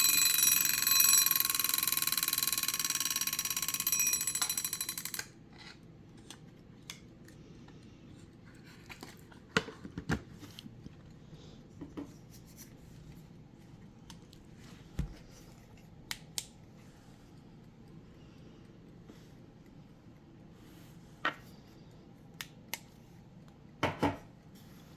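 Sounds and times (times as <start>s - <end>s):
alarm clock bell: 0.0s - 5.3s.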